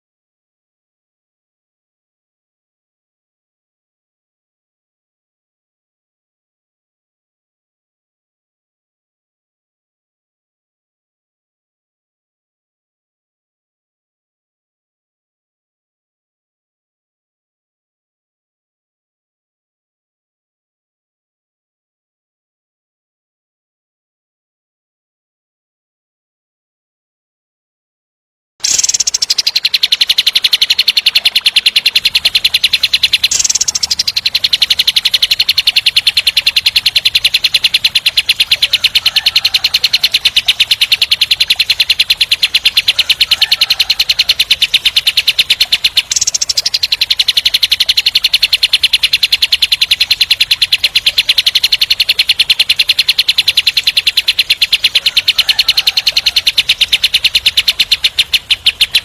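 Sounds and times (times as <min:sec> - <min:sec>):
bird rattling trill: 0:28.6 - 0:59.0.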